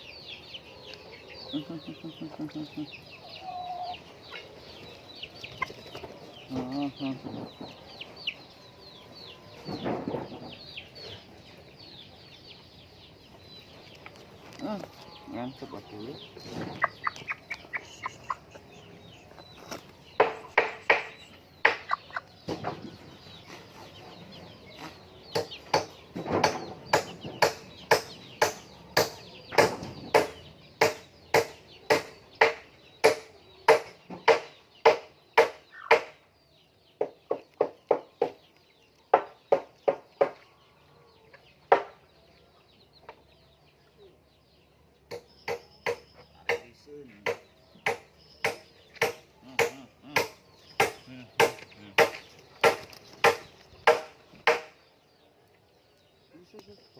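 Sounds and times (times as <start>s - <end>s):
hens clucking: 0.0s - 36.2s.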